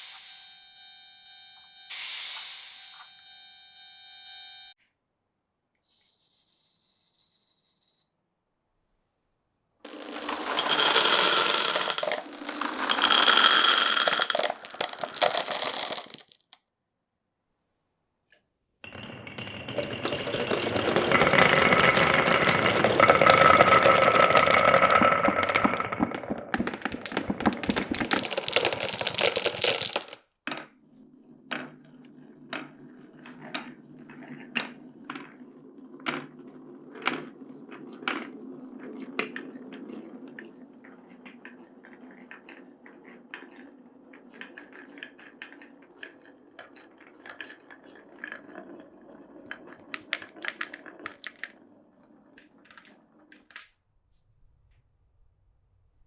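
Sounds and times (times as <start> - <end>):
marbles rolling and clattering: 9.9 - 16.6, 18.9 - 53.7
single marbles clicking: 9.9 - 16.6, 21.8 - 30.2.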